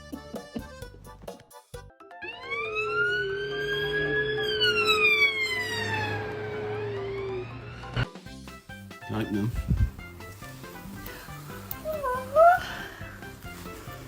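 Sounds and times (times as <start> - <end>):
siren wailing: 2.2 - 8.1.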